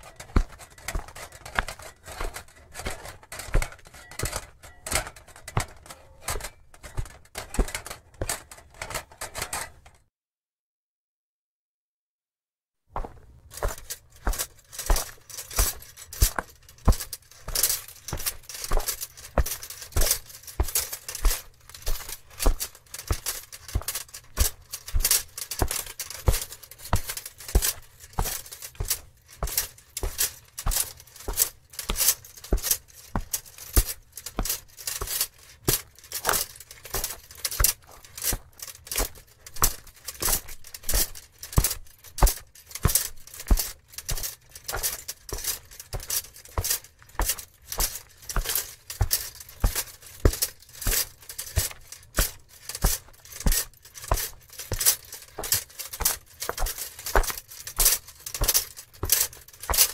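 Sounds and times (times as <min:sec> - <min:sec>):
heavy footsteps: 0:00.0 - 0:09.8, 0:12.9 - 0:59.9
armour clinking: 0:00.0 - 0:09.9, 0:13.0 - 0:59.9.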